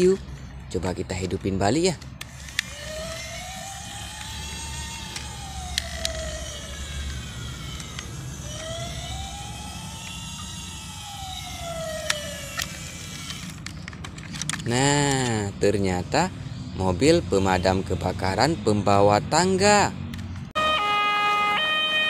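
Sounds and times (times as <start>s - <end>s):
toy electronic siren wailing: 2.3s - 13.7s, 20.6s - 22.0s.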